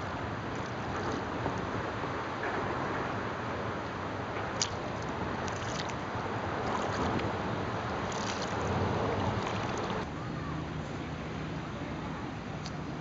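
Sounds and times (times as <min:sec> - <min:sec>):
paddle splashing in water: 0:00.0 - 0:01.9, 0:04.4 - 0:10.1
rushing water: 0:00.0 - 0:10.3
wind: 0:00.0 - 0:13.0.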